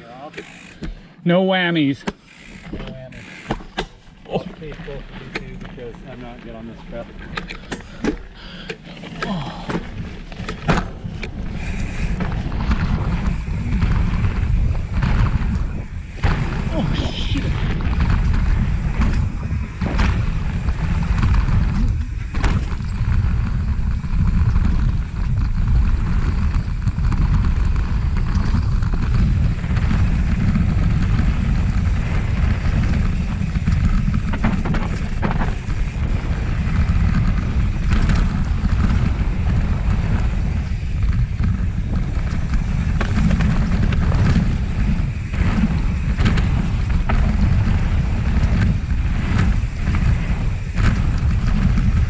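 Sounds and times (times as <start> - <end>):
bike knocks and rattles: 2.0 - 52.0
wind buffeting microphone: 9.2 - 52.0.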